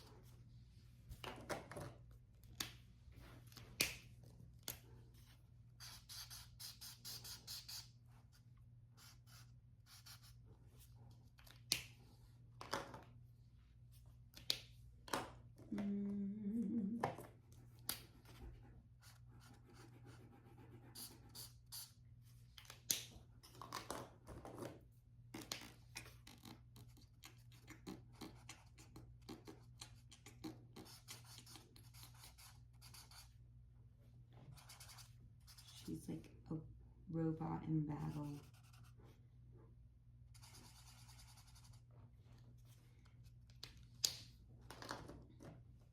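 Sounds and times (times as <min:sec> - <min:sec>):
marker scratching on paper: 0:05.8 - 0:08.0, 0:09.0 - 0:10.4, 0:18.2 - 0:22.0, 0:26.2 - 0:33.4, 0:34.5 - 0:36.0, 0:38.0 - 0:39.2, 0:40.3 - 0:41.9
steady low hum: 0:15.6 - 0:21.8.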